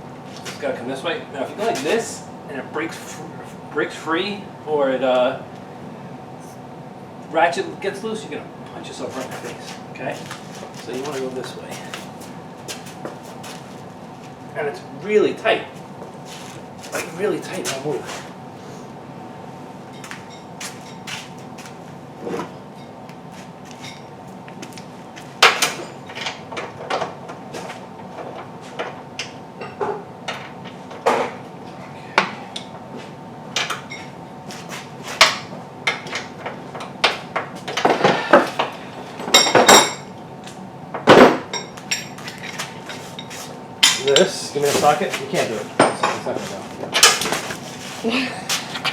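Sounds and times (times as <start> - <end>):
metal tools clanking: 41.5 - 46.4.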